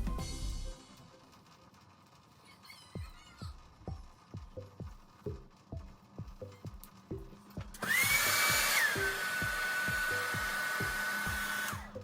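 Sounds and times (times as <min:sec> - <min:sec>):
background music with steady beat: 0:00.0 - 0:02.1, 0:03.0 - 0:12.0
hair dryer running: 0:07.6 - 0:12.0.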